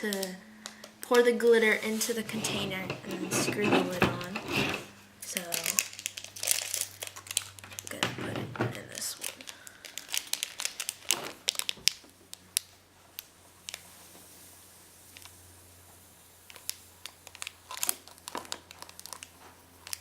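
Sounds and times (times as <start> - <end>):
plastic packaging crinkling: 5.3 - 8.1, 8.7 - 14.1, 16.4 - 20.0.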